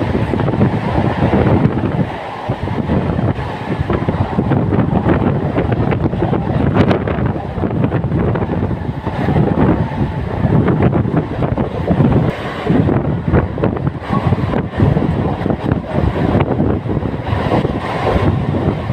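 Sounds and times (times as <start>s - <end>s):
train knocks and rattles: 0.0s - 18.9s
train rumbling at speed: 0.0s - 18.9s
wind buffeting on microphone: 0.0s - 18.9s.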